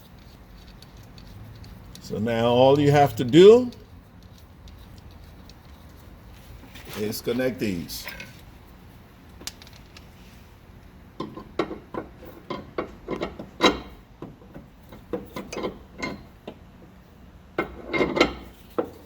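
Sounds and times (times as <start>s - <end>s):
metallic clicks and rattles of tools: 9.3s - 10.1s.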